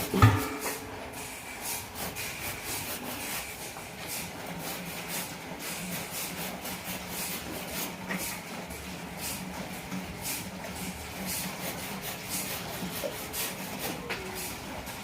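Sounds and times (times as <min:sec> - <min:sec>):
saw rasping through wood: 0:11.1 - 0:14.6.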